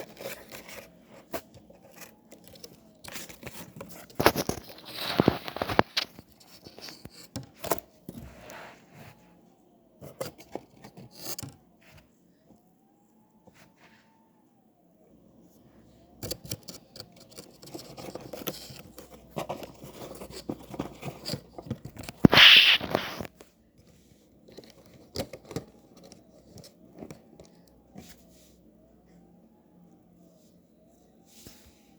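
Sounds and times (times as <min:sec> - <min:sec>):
loud hissing rush: 0:22.3 - 0:23.2.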